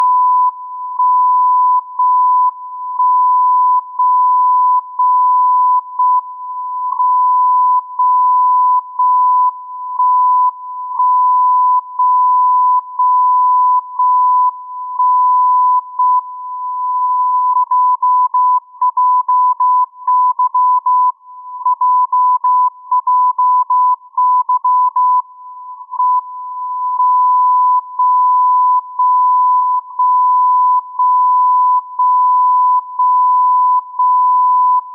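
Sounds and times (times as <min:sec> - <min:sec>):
morse code beeps: 0:07.0 - 0:25.2, 0:26.0 - 0:34.9.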